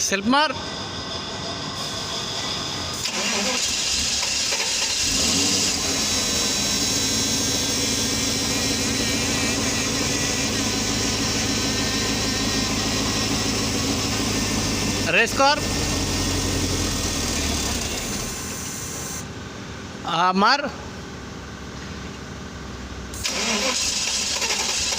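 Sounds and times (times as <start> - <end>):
car engine idling: 0.0 - 20.0
engine cranking on starter: 2.9 - 9.2, 16.3 - 18.8, 23.1 - 24.9.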